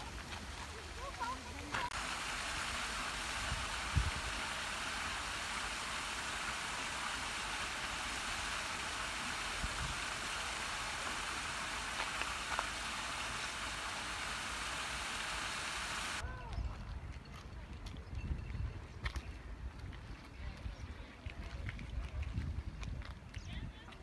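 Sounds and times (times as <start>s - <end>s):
heavy rain hissing: 0.0s - 16.2s.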